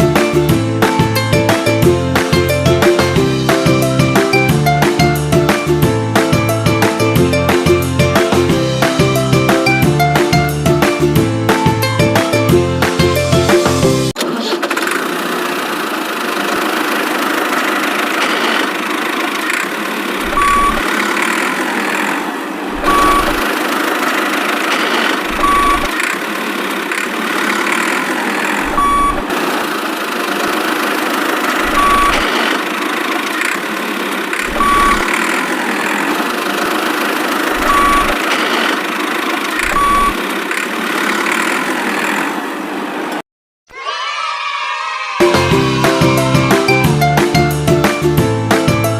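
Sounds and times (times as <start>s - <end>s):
electronic toy engine sound: 16.1s - 22.2s, 22.8s - 42.4s
short beeps: 20.3s - 20.8s, 22.8s - 23.4s, 25.4s - 25.9s, 28.7s - 29.2s, 31.7s - 32.3s, 34.5s - 35.2s, 37.6s - 38.2s, 39.6s - 40.2s.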